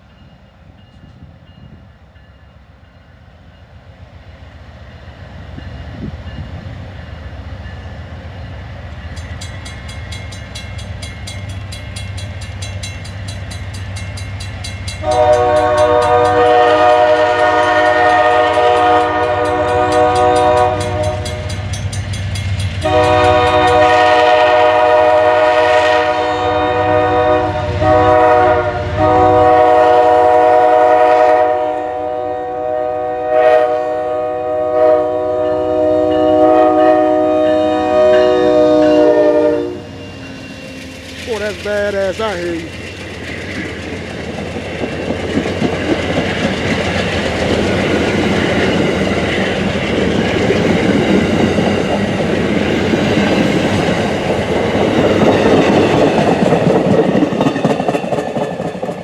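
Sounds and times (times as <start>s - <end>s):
diesel locomotive rumbling: 0.0s - 59.0s
train horn blasts: 15.0s - 21.7s, 22.8s - 41.0s.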